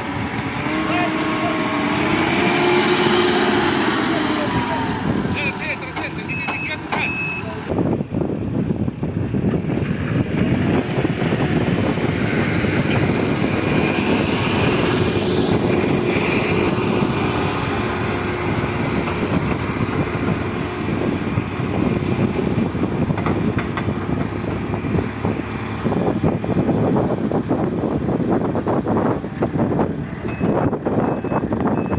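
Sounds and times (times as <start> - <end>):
heavy construction machinery engine: 0.0 - 31.9.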